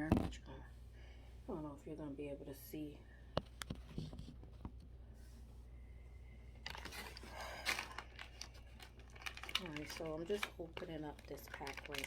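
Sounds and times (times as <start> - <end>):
plastic pack crinkling: 6.6 - 12.0.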